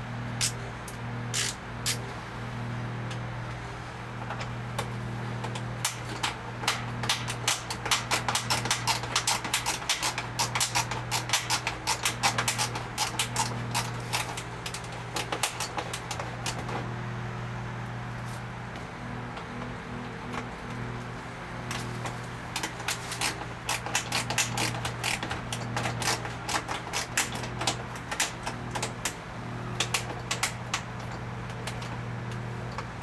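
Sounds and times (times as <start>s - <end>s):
steady low hum: 0.0s - 27.9s
hand tool clicking on screws: 1.4s - 2.0s, 6.7s - 15.6s.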